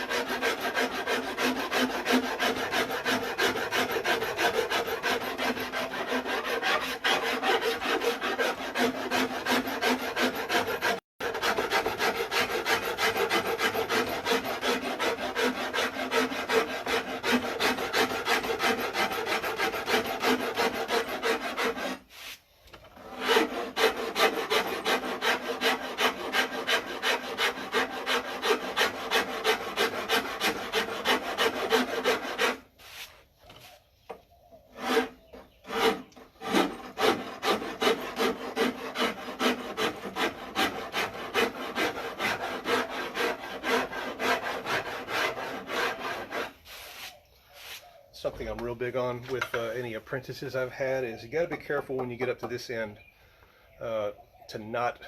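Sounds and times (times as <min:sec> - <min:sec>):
wood rasp carving wood: 0:00.0 - 0:47.9.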